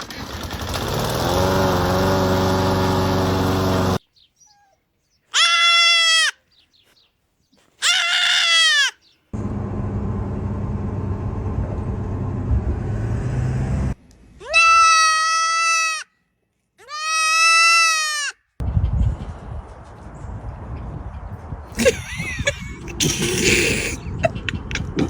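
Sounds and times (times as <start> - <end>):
goat bleating: 5.3 - 6.4, 7.8 - 9.0, 14.4 - 16.1, 16.8 - 18.4
noisy rumble with low hum: 9.4 - 14.0.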